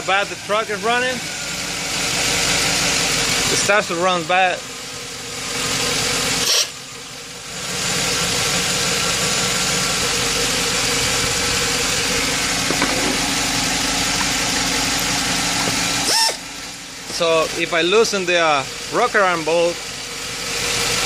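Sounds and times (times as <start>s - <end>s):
truck engine idling rough: 0.0s - 21.0s.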